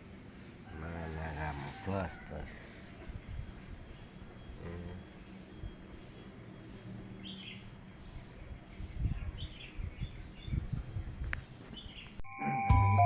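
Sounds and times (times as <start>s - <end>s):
faint high whine: 0.0s - 13.0s
bird chirps: 5.2s - 10.8s.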